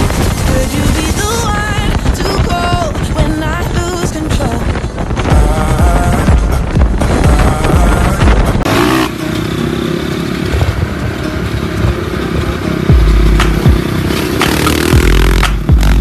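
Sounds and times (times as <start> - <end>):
wind buffeting microphone: 0.0 - 8.9
dirt bike engine revving: 5.3 - 16.0.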